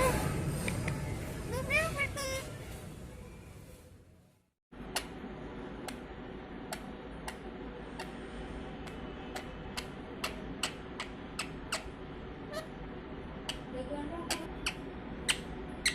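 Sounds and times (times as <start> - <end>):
low background hum: 0.0 - 15.9.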